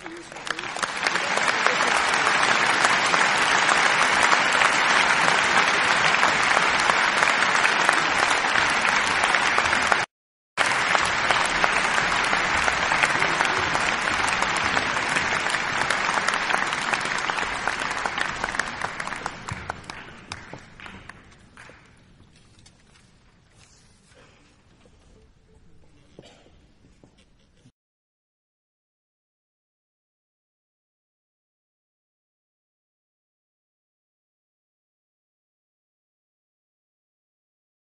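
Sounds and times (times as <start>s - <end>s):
crowd applause: 0.0s - 21.9s.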